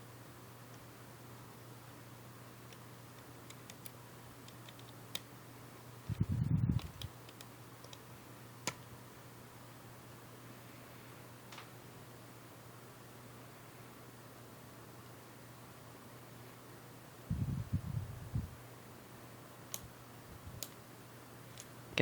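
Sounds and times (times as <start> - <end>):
hex key clicking on screws: 3.5 - 5.2.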